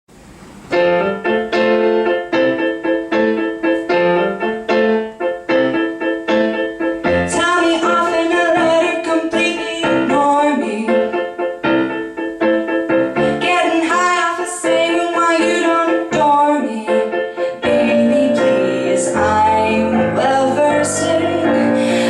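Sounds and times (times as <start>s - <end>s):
piano playing repeated chords: 0.1s - 22.0s
woman singing: 7.3s - 11.3s, 13.3s - 22.0s.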